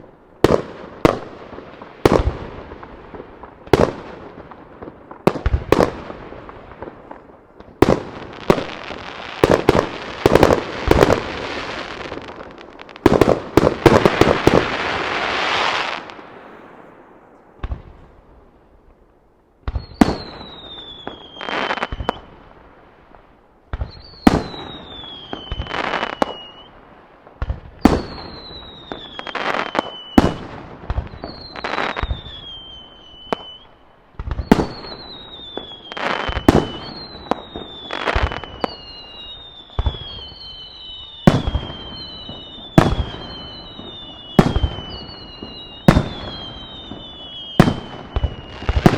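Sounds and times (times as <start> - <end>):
firework crackling: 0.0 - 18.0, 19.6 - 48.9
firework whistle falling in pitch: 19.7 - 22.3, 23.8 - 26.7, 31.0 - 33.8, 34.4 - 48.9.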